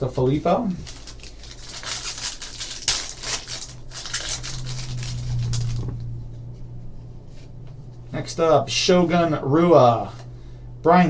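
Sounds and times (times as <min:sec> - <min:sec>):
foil wrapper crinkling: 0:00.0 - 0:05.9
low steady hum: 0:00.0 - 0:11.0.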